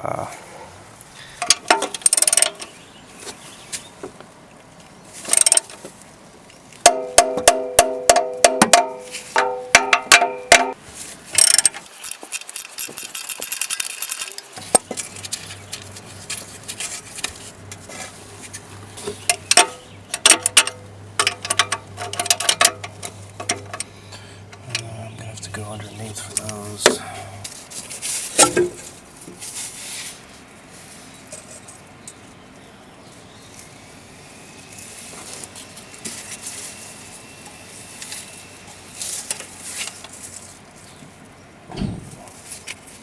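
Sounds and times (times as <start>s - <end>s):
ratchet wrench clicking: 2.0s - 2.6s, 5.3s - 5.7s, 11.4s - 14.7s.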